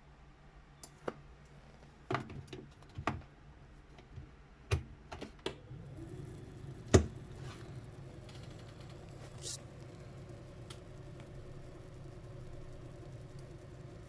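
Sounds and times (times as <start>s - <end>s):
typewriter motor humming: 5.7s - 14.0s.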